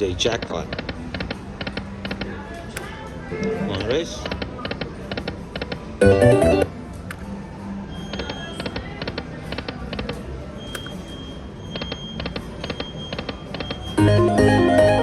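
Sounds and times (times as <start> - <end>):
slot machine electronic ticks: 4.3 - 6.7, 11.7 - 15.0.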